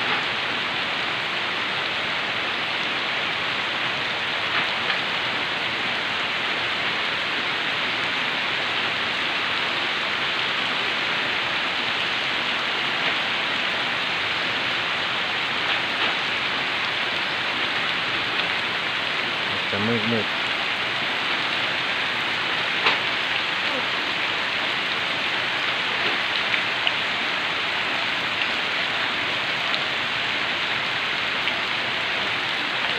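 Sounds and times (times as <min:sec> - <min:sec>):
heavy rain falling: 0:00.0 - 0:32.9
raindrops ticking: 0:15.2 - 0:32.9.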